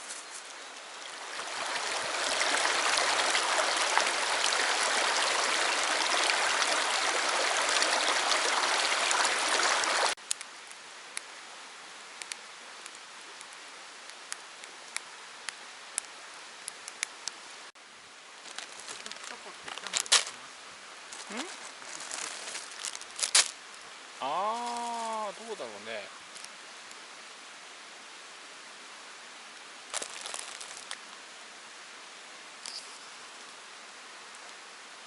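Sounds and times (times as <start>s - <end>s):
quiet steady hiss: 0.0s - 35.0s
stream water rushing: 0.5s - 10.2s, 22.6s - 32.6s
sharp cracks and snaps: 10.2s - 11.2s.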